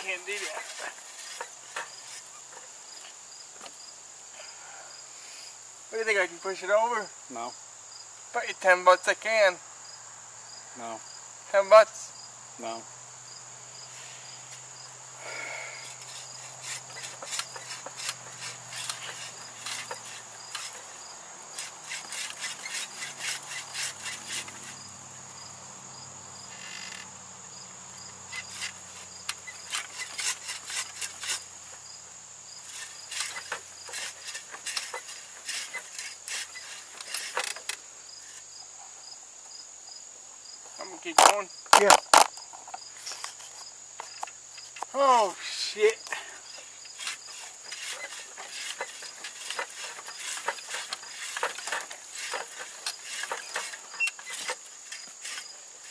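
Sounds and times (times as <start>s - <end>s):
crickets droning: 0.0s - 55.9s
hand saw rasping through wood: 16.0s - 24.8s, 28.4s - 31.5s, 32.7s - 37.6s, 46.9s - 55.9s.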